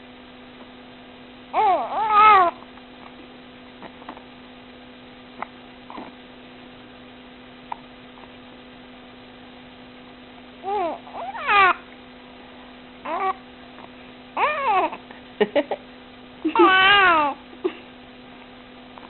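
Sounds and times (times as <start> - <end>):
electrical hum: 0.0 - 19.0
baby squealing: 1.6 - 2.6, 10.7 - 11.8, 14.4 - 15.0, 16.6 - 17.4.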